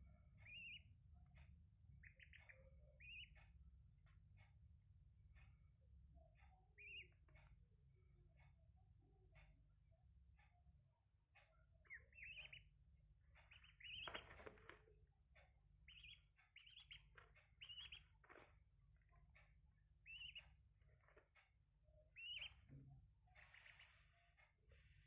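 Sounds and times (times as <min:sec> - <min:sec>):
ducklings peeping: 0:00.2 - 0:04.3, 0:06.7 - 0:07.5, 0:11.4 - 0:25.0.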